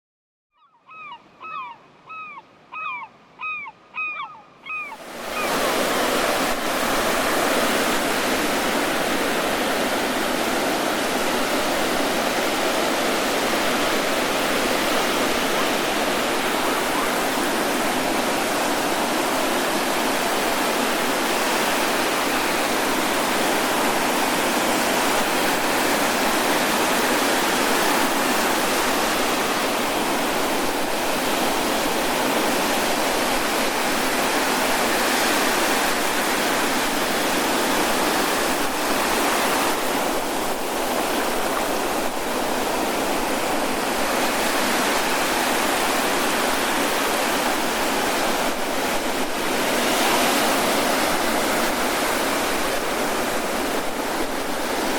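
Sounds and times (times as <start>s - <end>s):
short falling animal calls: 0.6s - 5.5s
waves breaking on a beach: 1.2s - 54.9s.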